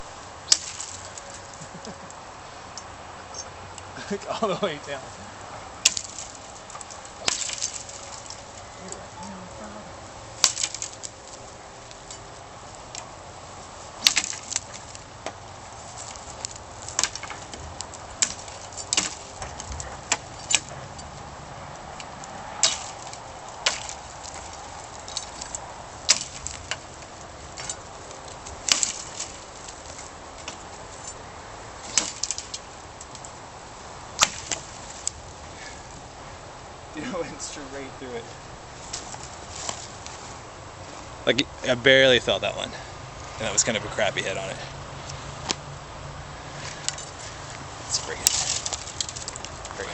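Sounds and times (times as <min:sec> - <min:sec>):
sword chopping tree limbs: 0:00.0 - 0:01.6, 0:05.8 - 0:08.6, 0:10.4 - 0:13.1, 0:13.9 - 0:21.0, 0:22.1 - 0:31.1, 0:31.8 - 0:33.2, 0:34.1 - 0:35.2, 0:38.9 - 0:40.0, 0:48.0 - 0:49.9.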